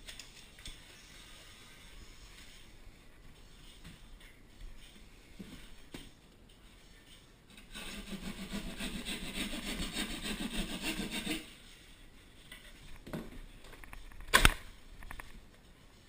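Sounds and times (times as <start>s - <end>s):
hand tool scraping drywall: 7.7s - 11.5s.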